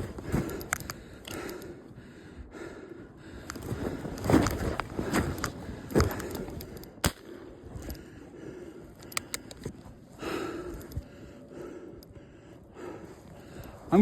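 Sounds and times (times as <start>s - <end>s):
faint clicks: 0.0s - 1.8s, 3.3s - 12.2s
pellet pistol firing: 7.0s - 7.3s.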